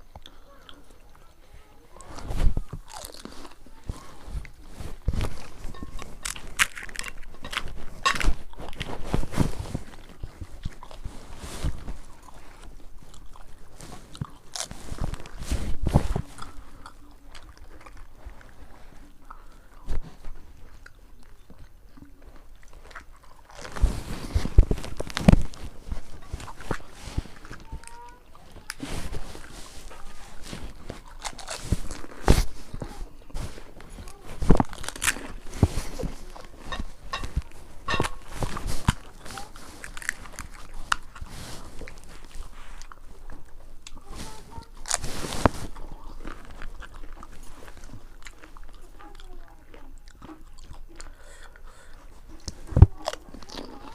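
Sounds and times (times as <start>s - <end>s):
chewing: 0.0s - 53.9s
crisp shells crunching: 2.0s - 51.2s.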